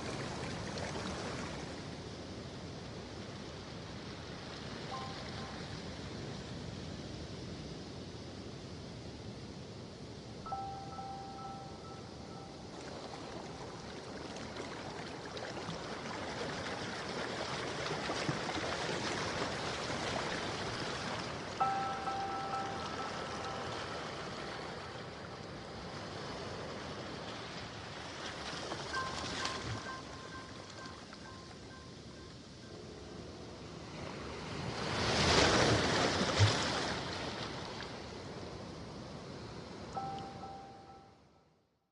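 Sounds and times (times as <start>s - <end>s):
sea wave breaking and washing in: 10.5s - 41.0s.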